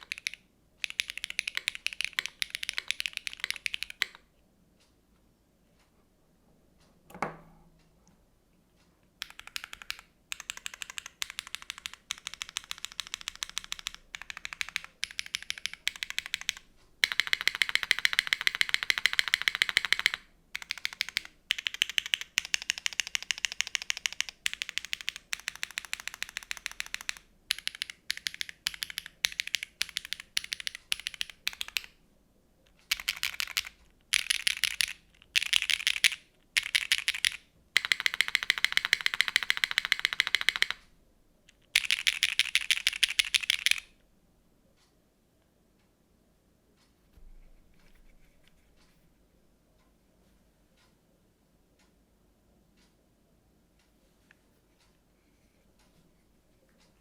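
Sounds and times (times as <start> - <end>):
fast typing on mechanical keyboard: 0.0 - 4.2, 9.2 - 32.0, 32.8 - 40.8, 41.5 - 43.9.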